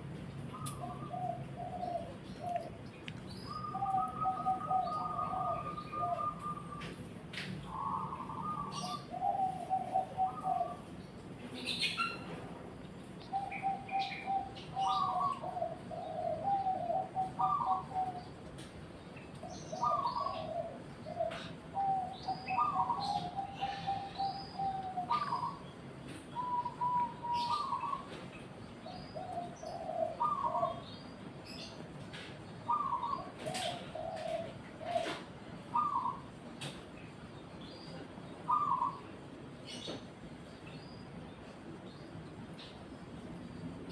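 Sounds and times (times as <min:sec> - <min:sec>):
dove cooing in warbled phrases: 0:00.5 - 0:02.8, 0:03.4 - 0:07.0, 0:07.6 - 0:11.0, 0:13.3 - 0:18.4, 0:19.4 - 0:28.2, 0:28.9 - 0:31.0, 0:32.6 - 0:36.4, 0:37.9 - 0:39.8.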